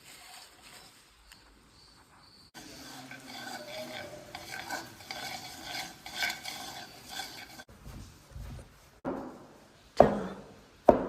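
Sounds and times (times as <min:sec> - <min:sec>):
utensil stirring and clinking in bowl: 0:02.6 - 0:07.7.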